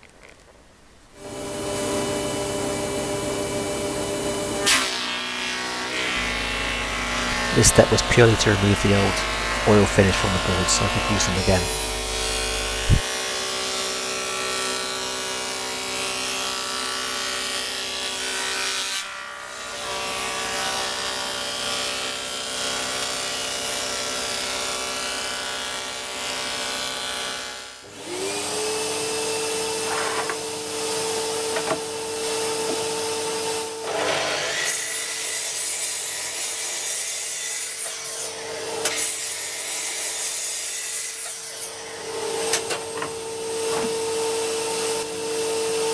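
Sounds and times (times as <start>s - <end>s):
power tool motor hum: 1.2s - 18.6s
wood cutting and rubbing noise: 1.2s - 26.4s, 27.0s - 45.9s.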